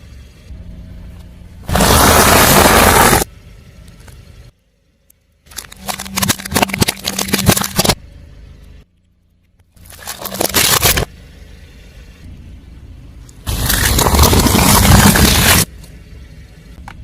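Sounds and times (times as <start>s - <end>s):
low steady hum: 0.0s - 17.0s
tyre crushing crunchy objects: 1.7s - 3.3s, 9.8s - 11.1s, 13.5s - 15.7s.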